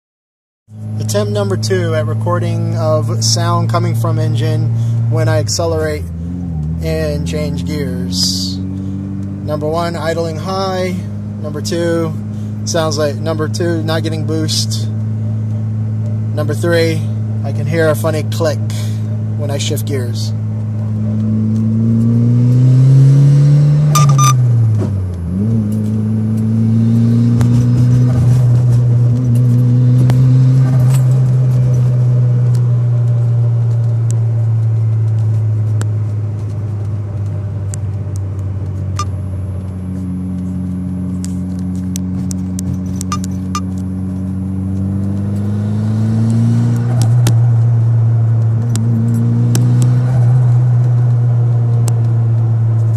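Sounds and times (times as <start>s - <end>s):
car engine accelerating: 0.7s - 52.9s
sharp clicks: 41.2s - 43.9s.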